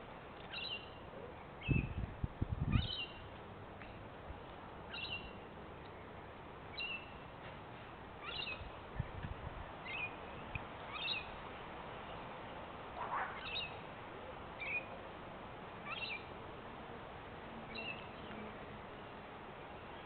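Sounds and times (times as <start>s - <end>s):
background hiss: 0.0s - 20.0s
bird calling: 13.0s - 13.8s.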